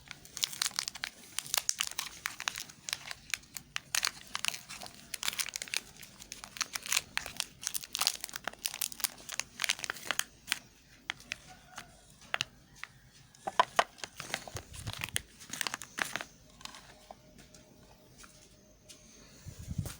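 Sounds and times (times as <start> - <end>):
wrapper crinkling and tearing: 0.0 - 17.1.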